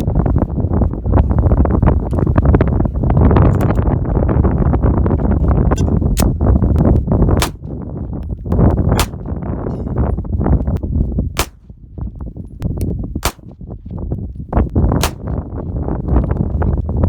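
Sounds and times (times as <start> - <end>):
wind noise on microphone: 0.0 - 17.0
handgun shots on steel target: 7.4 - 7.7, 9.0 - 9.3, 11.4 - 11.7, 13.2 - 13.5, 15.0 - 15.4.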